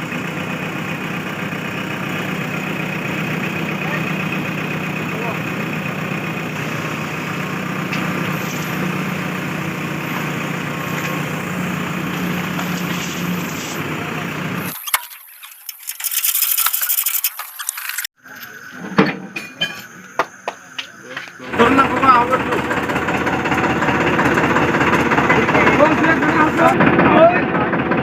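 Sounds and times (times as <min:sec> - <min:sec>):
diesel engine running: 0:00.0 - 0:15.4, 0:17.3 - 0:28.0
scattered clinks and clattering: 0:14.7 - 0:18.1.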